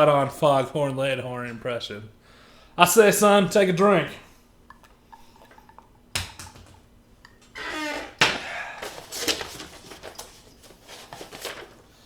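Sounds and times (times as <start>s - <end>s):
man exhaling: 8.2s - 9.0s.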